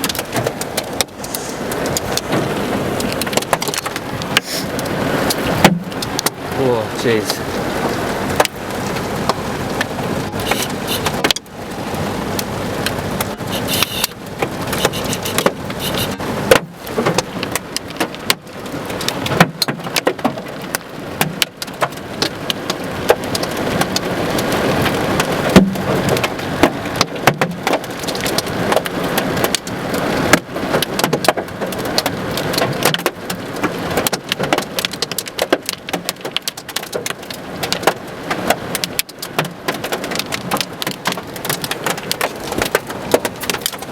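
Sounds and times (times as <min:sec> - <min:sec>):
heavy rain hiss: 0:00.0 - 0:17.6
hailstones clattering: 0:00.0 - 0:43.9.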